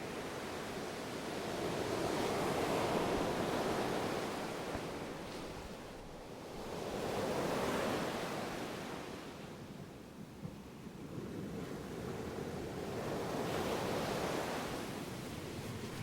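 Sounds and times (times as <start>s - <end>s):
ocean waves washing in: 11.8s - 16.0s.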